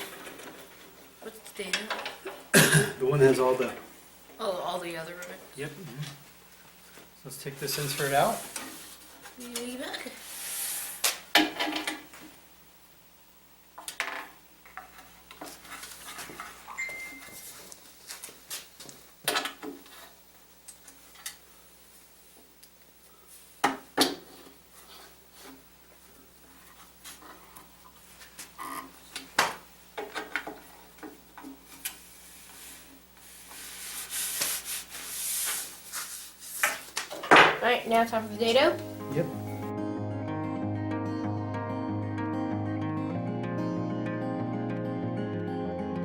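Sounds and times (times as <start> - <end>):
rubbing and scraping: 31.8 - 37.0.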